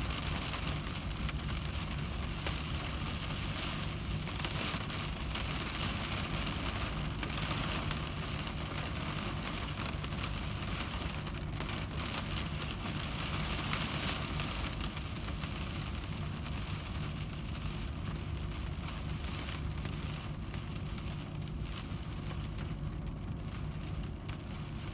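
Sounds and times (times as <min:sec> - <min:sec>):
rain on car windshield: 0:00.0 - 0:24.9
steady low hum: 0:17.4 - 0:24.9.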